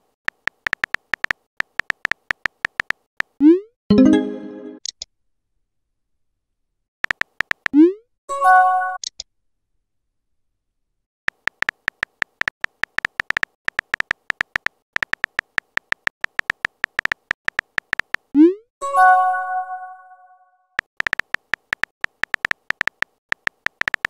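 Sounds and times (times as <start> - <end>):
keyboard typing clicks: 0.3 - 3.3, 7.0 - 7.8, 11.3 - 18.3, 20.8 - 24.0
notification chime: 3.9 - 4.8, 18.9 - 20.3.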